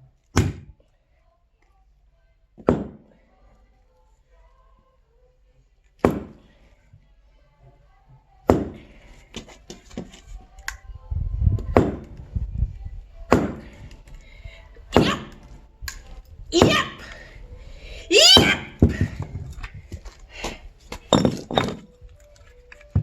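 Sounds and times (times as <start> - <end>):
axe chopping wood: 0.4 - 0.7, 2.6 - 3.0, 6.0 - 6.4, 8.5 - 9.5, 11.7 - 12.2, 13.3 - 13.8, 15.0 - 15.4, 16.6 - 17.1.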